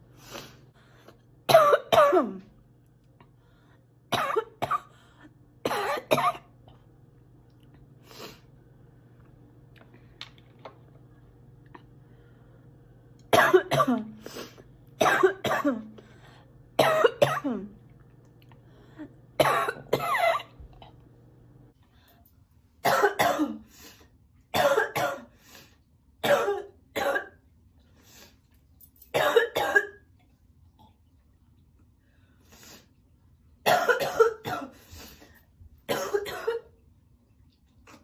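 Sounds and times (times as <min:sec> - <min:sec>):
girl coughing: 0:01.5 - 0:02.5, 0:04.1 - 0:04.9, 0:05.6 - 0:06.5, 0:13.3 - 0:14.2, 0:15.0 - 0:15.9, 0:16.8 - 0:17.7, 0:19.4 - 0:20.5, 0:22.8 - 0:23.7, 0:24.6 - 0:25.3, 0:26.2 - 0:27.4, 0:29.2 - 0:30.0, 0:33.7 - 0:34.8, 0:35.9 - 0:36.7.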